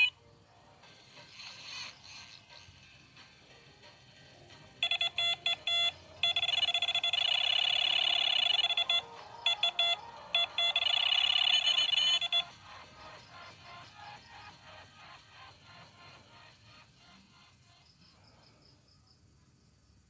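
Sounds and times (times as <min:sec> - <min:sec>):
electronic beeping: 0:04.8 - 0:16.6.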